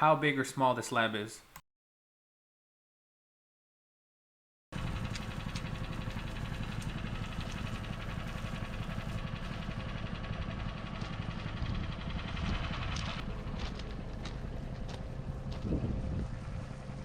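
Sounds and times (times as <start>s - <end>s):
plate compactor running: 4.8s - 17.0s.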